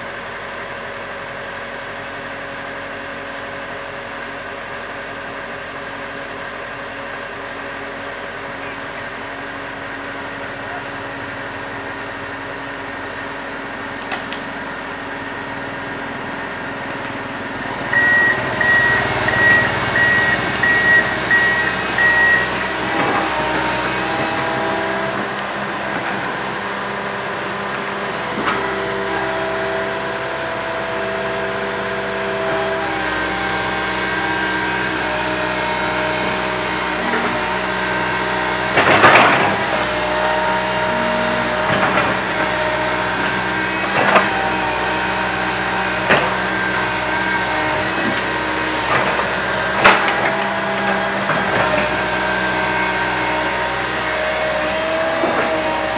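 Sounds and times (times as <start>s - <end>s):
excavator diesel engine running: 0.0s - 55.9s
hydraulic whining: 7.4s - 55.9s
short beeps: 17.9s - 22.6s.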